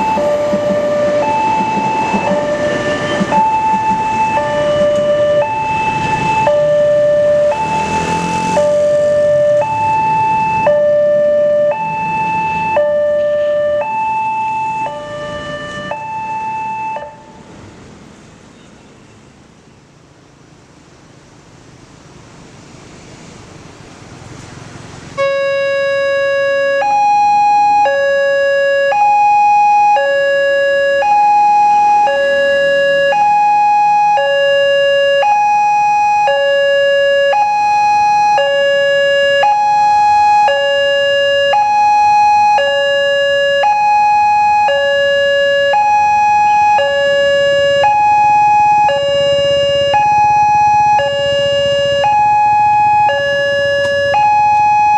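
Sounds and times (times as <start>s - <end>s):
rising rushing noise: 0.0s - 10.6s
level crossing two-tone alarm: 0.0s - 17.2s, 25.2s - 54.9s.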